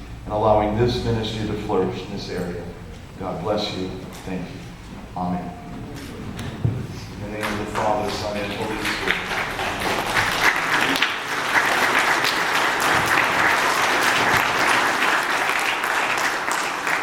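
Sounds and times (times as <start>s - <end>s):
crowd applauding: 5.8s - 17.0s.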